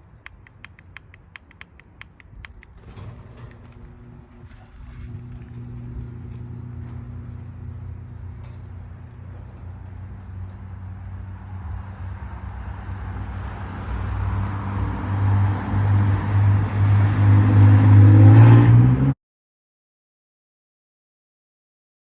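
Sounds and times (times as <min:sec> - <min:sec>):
motor humming: 0:02.0 - 0:10.0.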